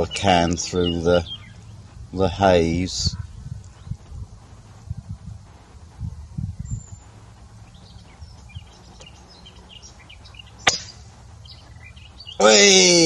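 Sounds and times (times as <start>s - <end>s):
wind buffeting microphone: 0.0s - 12.6s
birds chirping faintly: 0.0s - 13.0s
air rifle shot: 10.6s - 11.0s.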